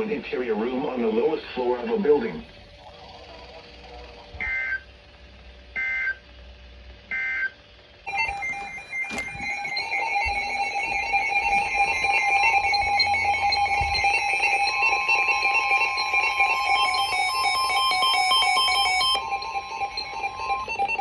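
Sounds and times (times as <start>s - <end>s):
pulsing electronic alarm: 2.2s - 4.9s, 8.1s - 21.0s
steady single alarm tone: 8.1s - 21.0s.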